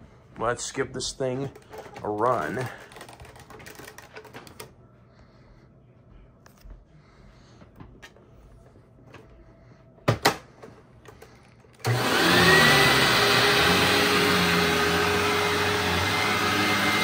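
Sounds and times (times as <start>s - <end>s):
vacuum cleaner motor whining: 11.8s - 17.0s.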